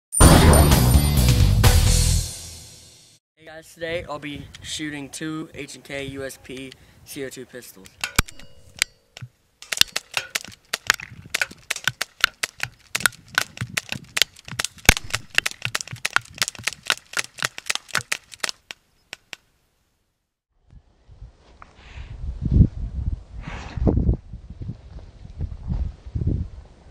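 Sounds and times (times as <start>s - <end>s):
airsoft pistol shots: 14.9s - 15.5s.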